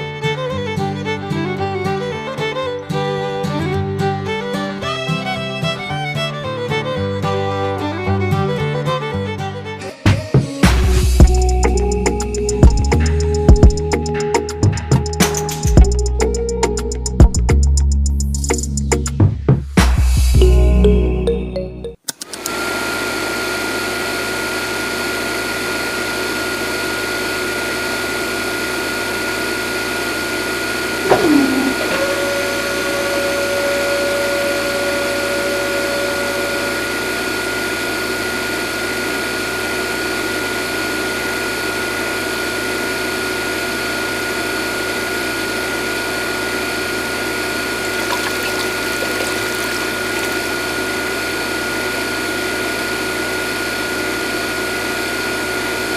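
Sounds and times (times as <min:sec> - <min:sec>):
electric water pump whining: 0:29.6 - 0:38.1, 0:47.7 - 0:53.8
water flowing: 0:31.0 - 0:32.6, 0:47.8 - 0:51.0.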